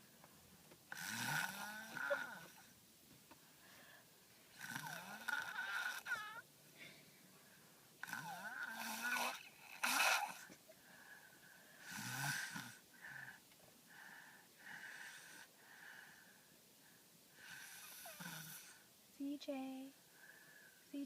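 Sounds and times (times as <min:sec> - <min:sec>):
child snoring with whistle: 0:00.9 - 0:02.6, 0:08.0 - 0:10.5, 0:17.5 - 0:18.8.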